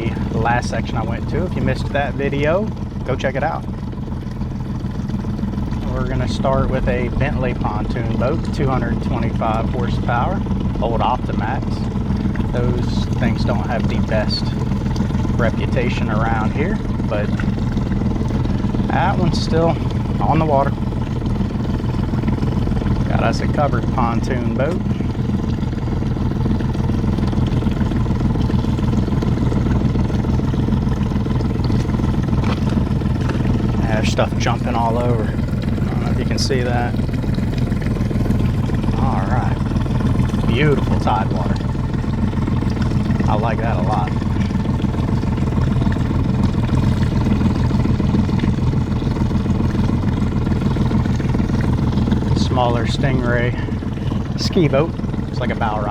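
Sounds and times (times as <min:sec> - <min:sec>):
boat engine running: 0:00.0 - 0:55.9.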